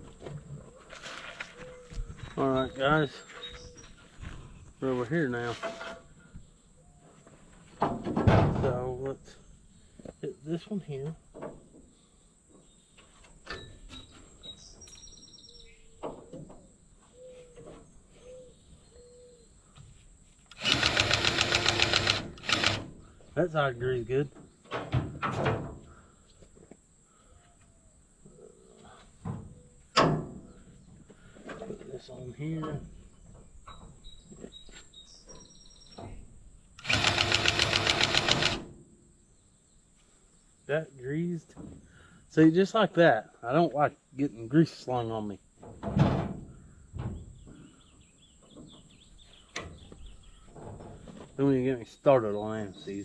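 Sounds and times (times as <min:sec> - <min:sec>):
bird chirps: 0:01.5 - 0:04.2, 0:12.5 - 0:19.8, 0:33.0 - 0:36.2
loud rapidly pulsing machine: 0:20.5 - 0:22.8, 0:36.8 - 0:38.6.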